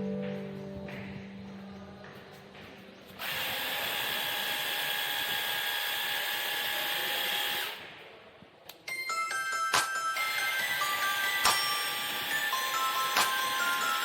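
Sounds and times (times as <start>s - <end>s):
pressure washer motor whine: 3.2s - 7.8s.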